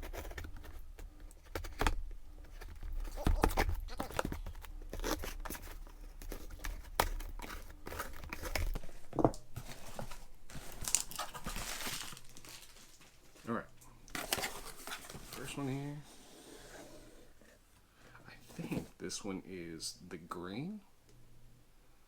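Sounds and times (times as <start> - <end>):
plastic crinkling: 0.0 - 16.0.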